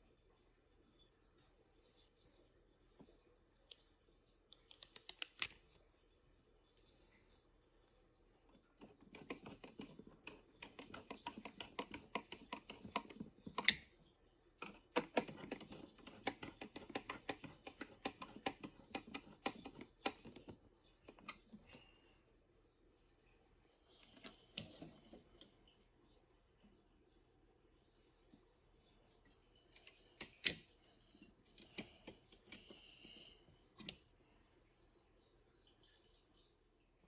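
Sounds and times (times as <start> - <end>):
small clicks and taps: 4.5 - 5.8, 7.8 - 13.9, 14.6 - 21.8, 29.2 - 33.1, 33.8 - 34.1.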